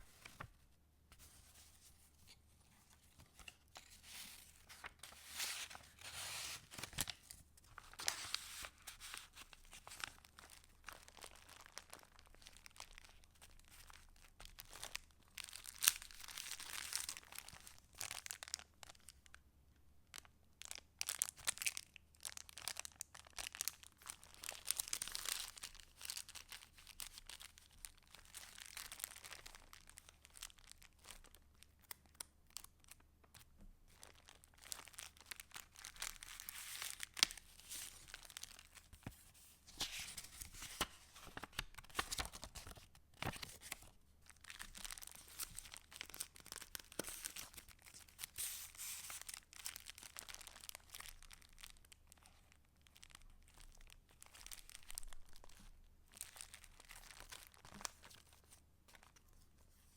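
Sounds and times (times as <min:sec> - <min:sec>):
paper rustling and crinkling: 0:00.0 - 0:18.3, 0:34.0 - 0:51.2, 0:53.5 - 0:59.9.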